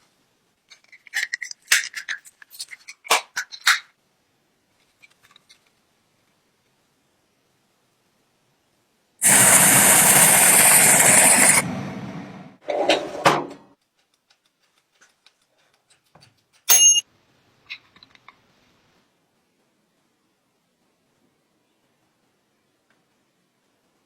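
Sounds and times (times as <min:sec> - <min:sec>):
power tool hissing: 0:09.2 - 0:12.5
metal clink with ringing tone: 0:16.7 - 0:17.1.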